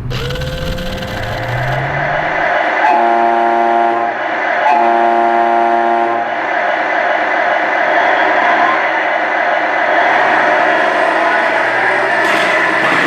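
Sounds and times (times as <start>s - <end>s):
toy car electric motor whining: 0.0s - 2.4s
electronic horn: 0.0s - 6.3s.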